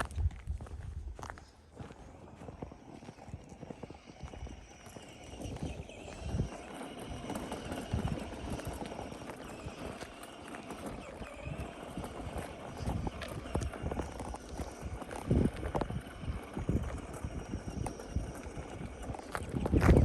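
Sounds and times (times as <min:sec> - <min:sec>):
footsteps on dirt trail: 0:00.0 - 0:20.0.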